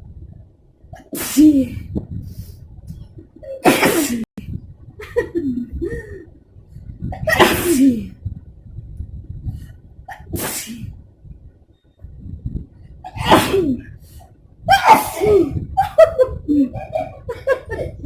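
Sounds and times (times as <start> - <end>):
person sneezing: 1.0 - 1.8, 3.6 - 4.3, 7.2 - 8.1, 10.1 - 10.9, 13.1 - 13.9, 14.7 - 15.6.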